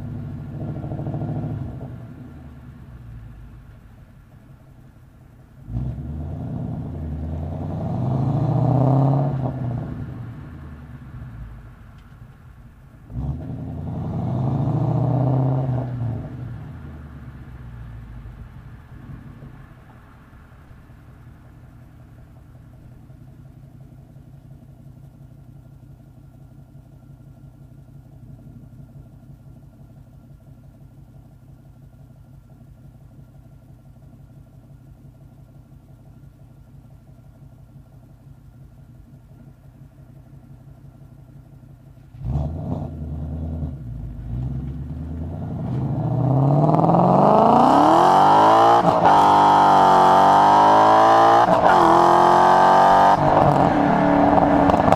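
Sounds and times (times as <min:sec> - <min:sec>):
car engine accelerating hard: 0:00.0 - 0:03.7, 0:05.6 - 0:11.8, 0:13.0 - 0:19.9, 0:42.0 - 0:54.9
car engine idling: 0:00.0 - 0:08.1, 0:08.8 - 0:54.9.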